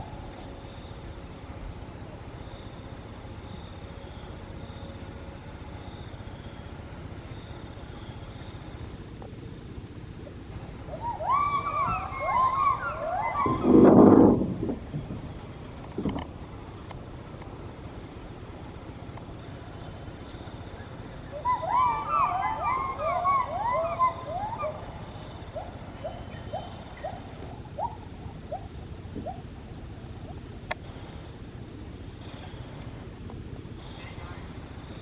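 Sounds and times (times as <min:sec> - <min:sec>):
primate whooping calls: 0:10.8 - 0:14.9, 0:20.8 - 0:29.4.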